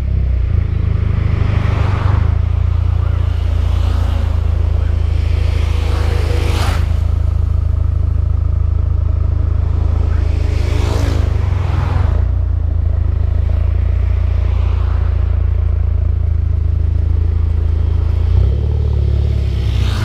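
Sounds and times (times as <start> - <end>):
engine revving with rush of air: 0.0 - 7.6, 9.6 - 12.4, 17.0 - 20.0
car engine droning: 0.0 - 20.0.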